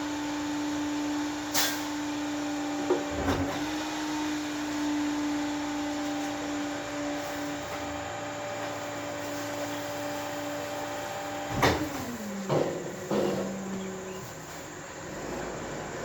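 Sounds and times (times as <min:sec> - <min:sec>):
machine hum: 0:04.2 - 0:16.0.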